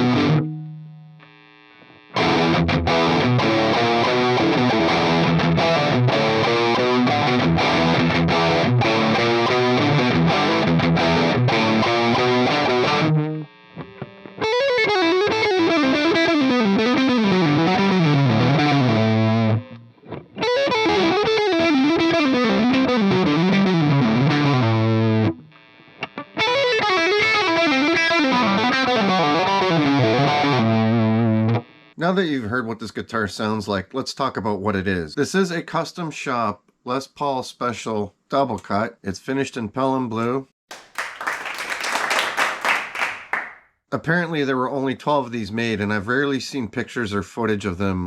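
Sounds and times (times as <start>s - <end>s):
distorted electric guitar riff: 0.0s - 31.9s.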